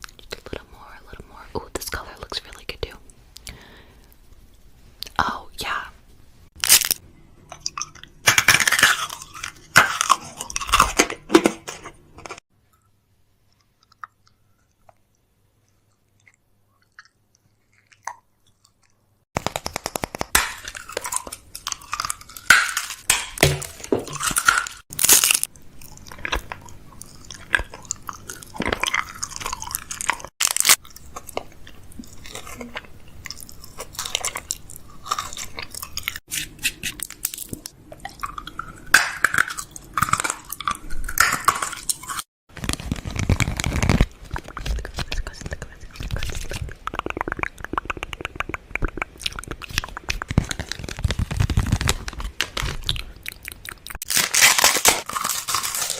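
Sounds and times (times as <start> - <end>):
crunchy chewing-like crackles: 6.6 - 12.4, 13.5 - 23.1, 24.1 - 55.9
wet mouth clicks: 44.3 - 51.0.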